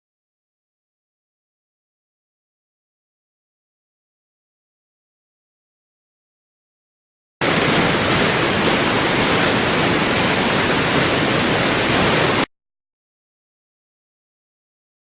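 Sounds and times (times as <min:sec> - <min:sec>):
rush of falling water: 0:07.4 - 0:12.5.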